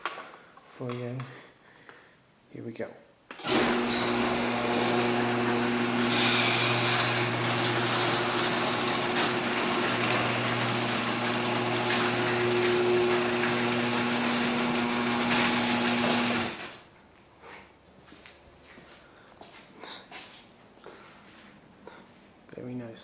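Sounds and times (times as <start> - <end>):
garage door opener motor hum: 3.4 - 16.8.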